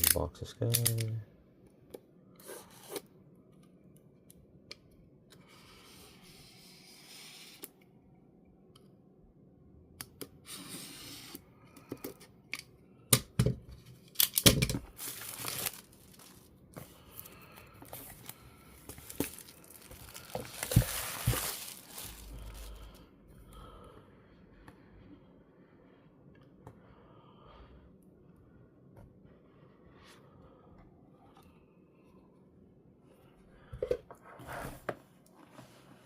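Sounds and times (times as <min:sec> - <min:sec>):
packaging tearing and crinkling: 0:14.1 - 0:16.5, 0:17.9 - 0:22.7.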